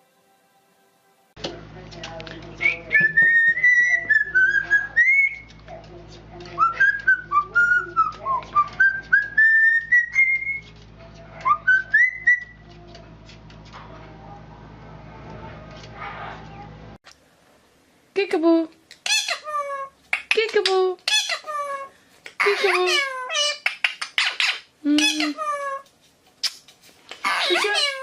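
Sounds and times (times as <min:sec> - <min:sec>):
parrot whistling a tune: 0:02.6 - 0:05.5, 0:06.6 - 0:10.7, 0:11.5 - 0:12.6.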